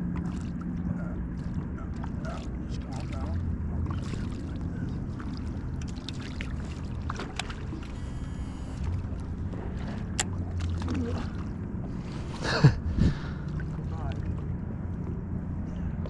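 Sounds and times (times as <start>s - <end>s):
electric motor humming: 7.7s - 9.2s.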